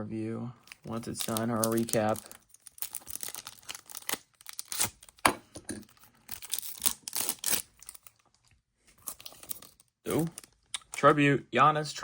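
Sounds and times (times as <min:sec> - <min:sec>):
foil wrapper tearing and crinkling: 0:00.7 - 0:05.3, 0:05.9 - 0:08.3, 0:09.0 - 0:10.6.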